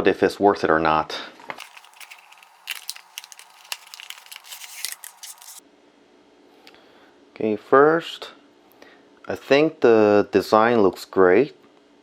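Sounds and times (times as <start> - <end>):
handling clicks and rustles: 1.6 - 5.6.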